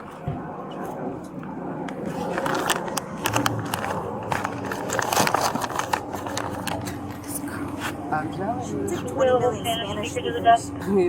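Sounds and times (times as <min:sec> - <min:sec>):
rustling handling noise: 0:02.1 - 0:07.2.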